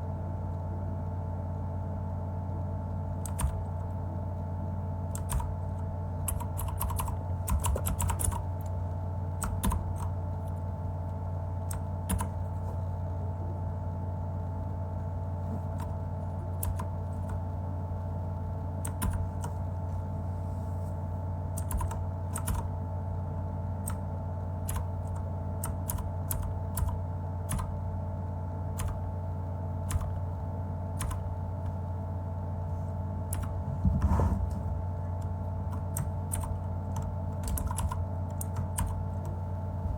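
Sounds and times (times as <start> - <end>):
steady hum: 0.0 - 39.9
mechanical keyboard typing: 3.2 - 3.8, 5.1 - 5.6, 6.2 - 8.7, 9.4 - 10.2, 11.7 - 12.3, 16.5 - 17.4, 18.8 - 19.5, 21.6 - 22.7, 24.6 - 27.8, 28.8 - 29.0, 29.9 - 30.2, 31.0 - 31.2, 33.3 - 33.6, 35.7 - 39.4.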